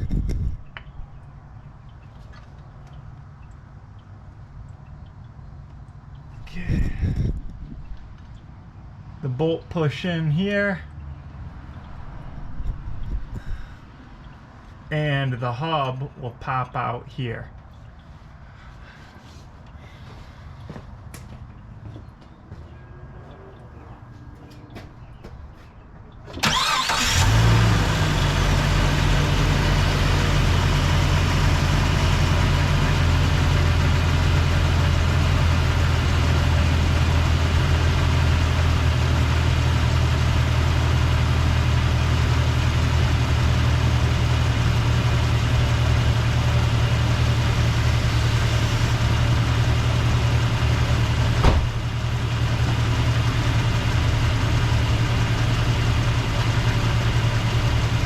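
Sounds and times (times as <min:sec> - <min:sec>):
car engine starting and idling: 0:26.3 - 0:58.0
sharp knock: 0:51.4 - 0:51.8.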